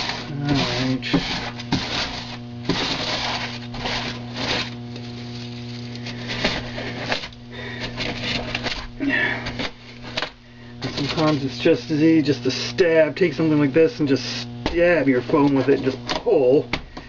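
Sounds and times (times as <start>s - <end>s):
foam board being scraped and torn: 0.0s - 9.0s
low electrical hum: 0.0s - 17.0s.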